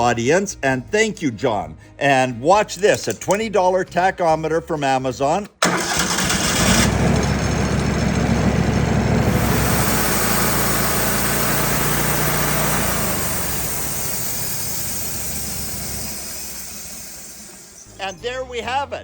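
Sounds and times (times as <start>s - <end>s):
sawmill engine running: 5.6s - 18.2s.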